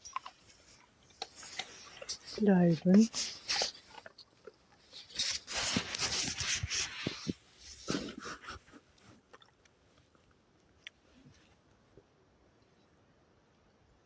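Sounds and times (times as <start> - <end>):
rubbing and rustling: 0.0 - 9.3.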